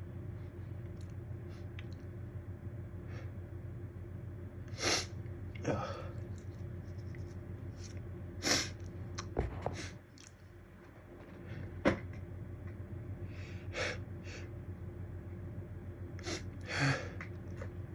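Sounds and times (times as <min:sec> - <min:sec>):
low steady hum: 0:00.0 - 0:17.9
person gasping and sniffing: 0:16.2 - 0:17.3.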